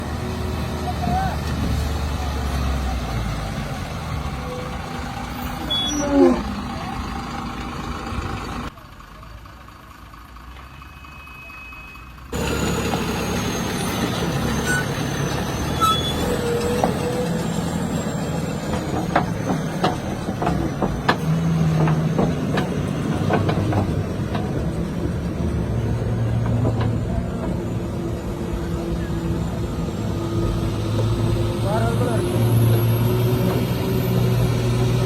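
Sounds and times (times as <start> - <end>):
diesel truck engine running: 0.0 - 35.0
sharp clicks and knocks: 18.6 - 25.3, 26.3 - 27.7.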